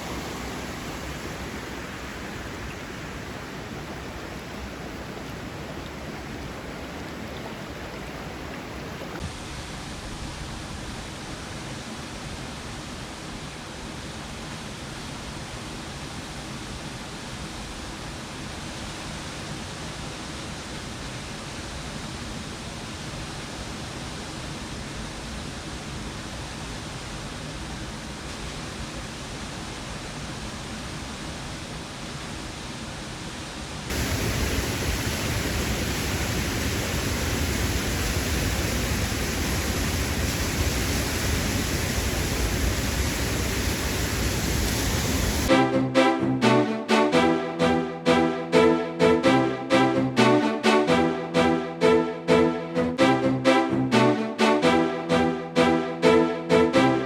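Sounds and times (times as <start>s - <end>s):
creek water rushing: 0.0s - 9.3s, 33.9s - 57.0s.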